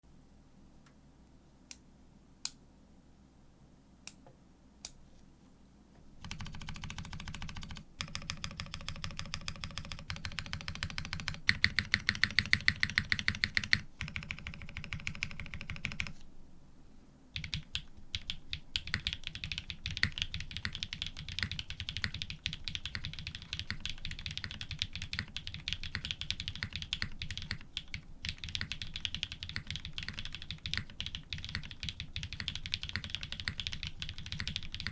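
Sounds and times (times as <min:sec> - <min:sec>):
mechanical keyboard typing: 0:06.2 - 0:16.2, 0:17.4 - 0:34.9.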